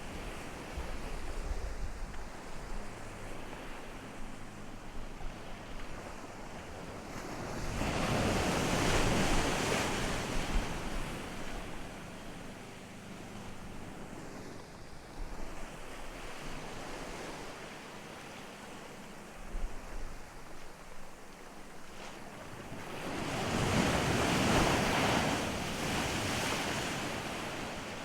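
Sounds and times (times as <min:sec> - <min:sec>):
wind buffeting microphone: 0:00.0 - 0:12.1
ocean surf washing onto beach: 0:00.0 - 0:28.0.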